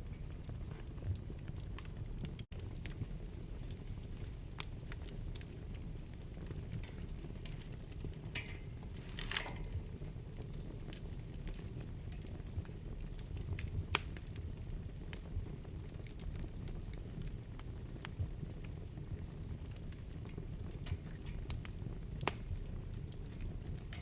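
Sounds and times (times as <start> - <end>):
wood fire crackling: 0.0 - 24.0.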